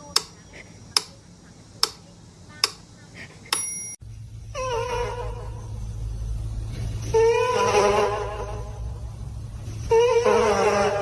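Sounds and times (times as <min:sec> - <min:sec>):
sharp clicks: 0:00.0 - 0:01.2, 0:01.8 - 0:02.0, 0:02.6 - 0:02.9
low steady hum: 0:00.0 - 0:11.0
ringing ping: 0:03.5 - 0:04.0.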